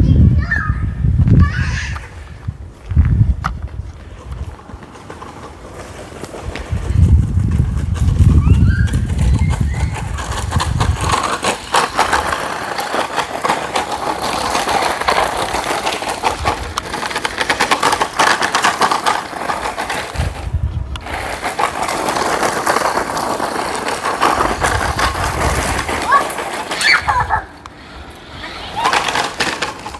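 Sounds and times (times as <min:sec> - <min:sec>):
rc truck motor crackling: 0:07.4 - 0:29.9.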